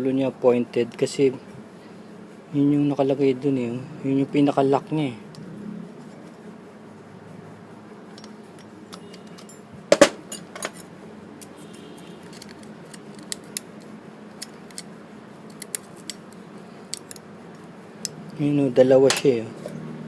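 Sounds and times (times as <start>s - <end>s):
pliers clicking on metal: 8.2s - 9.6s, 12.2s - 14.9s, 15.5s - 18.4s.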